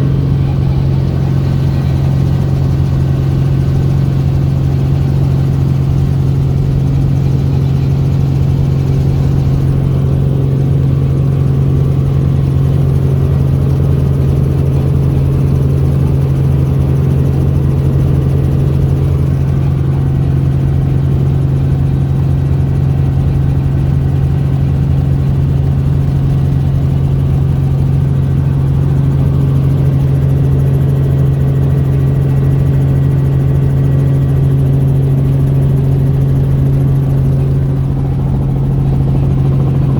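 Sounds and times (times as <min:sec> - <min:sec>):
helicopter drone: 0:00.0 - 0:39.9.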